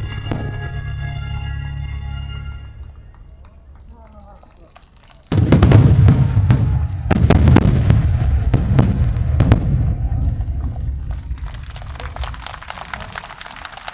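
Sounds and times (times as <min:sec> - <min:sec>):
firework crackle: 0:00.0 - 0:01.2, 0:02.8 - 0:13.9
firework shells booming: 0:00.0 - 0:01.6, 0:02.8 - 0:13.4.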